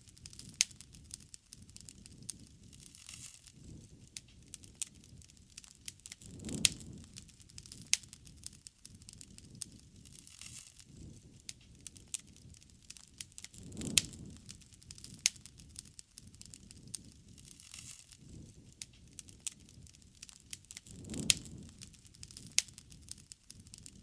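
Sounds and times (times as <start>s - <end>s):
campfire crackling: 0.0s - 24.0s
fire snaps and pops: 0.0s - 24.0s
low rush of burning: 0.0s - 24.0s.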